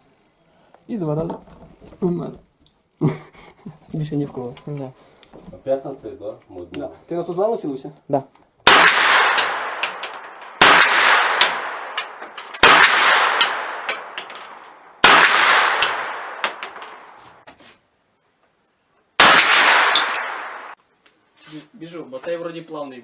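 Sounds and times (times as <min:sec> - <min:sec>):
rifle shots with echo: 0:08.6 - 0:17.2, 0:19.2 - 0:20.8.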